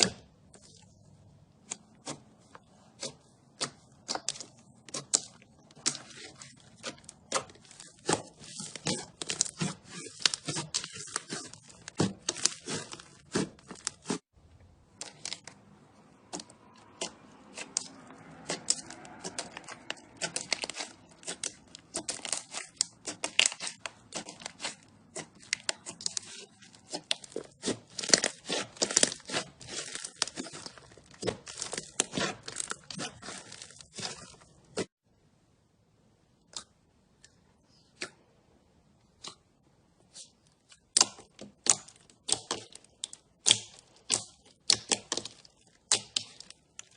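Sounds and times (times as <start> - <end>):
slime crackling and popping: 2.9 - 14.3, 16.3 - 34.9, 40.9 - 46.9.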